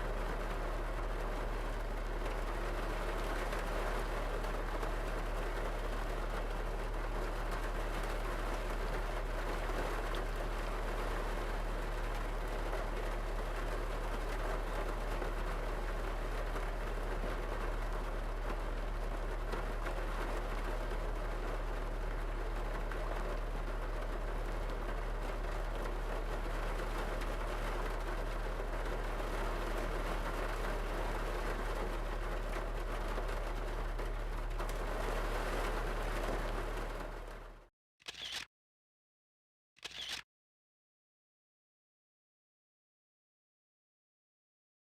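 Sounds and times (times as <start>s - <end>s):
rain on a car roof: 0.0s - 37.7s.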